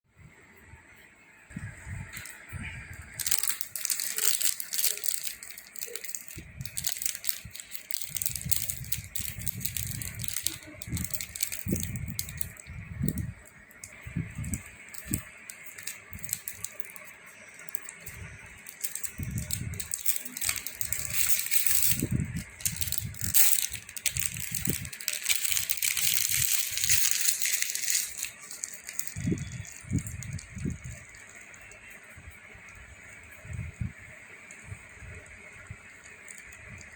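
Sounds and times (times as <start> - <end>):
hard lollipop being eaten: 3.2 - 13.2.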